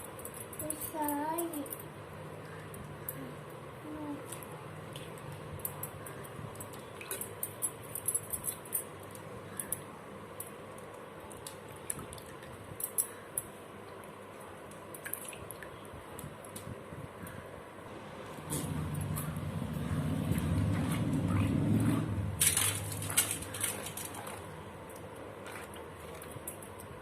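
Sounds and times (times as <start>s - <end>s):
low background hum: 0.0s - 27.0s
water drips: 13.8s - 16.7s, 18.7s - 26.8s
vegetables rinsed in water: 18.7s - 26.7s.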